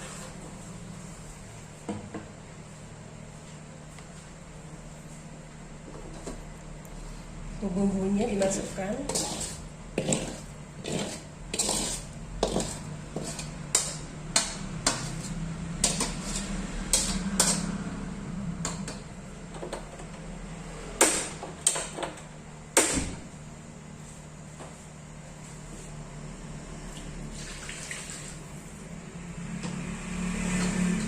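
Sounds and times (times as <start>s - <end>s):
utensil scraping a pan: 0.0s - 0.4s, 8.2s - 17.9s.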